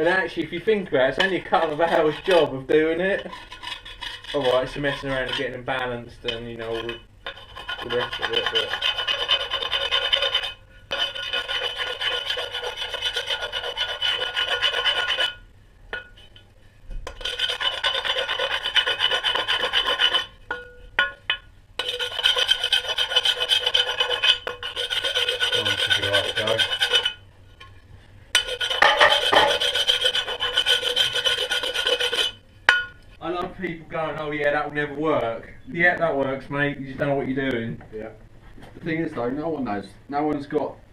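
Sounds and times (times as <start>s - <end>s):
rasping on a hard surface: 1.2s - 2.5s, 3.1s - 15.4s, 17.1s - 20.4s, 21.8s - 27.2s, 28.4s - 32.4s.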